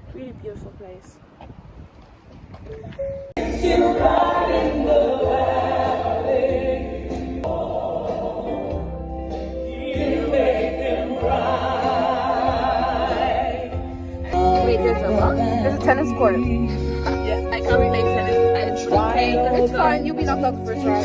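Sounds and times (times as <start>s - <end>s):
music with choir-like voices: 3.4s - 21.0s.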